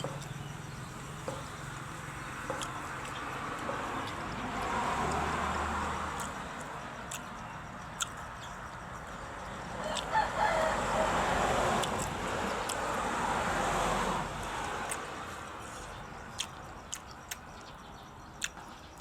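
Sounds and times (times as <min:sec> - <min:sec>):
steady background noise: 0:00.0 - 0:19.0
chicken calling: 0:09.5 - 0:13.0.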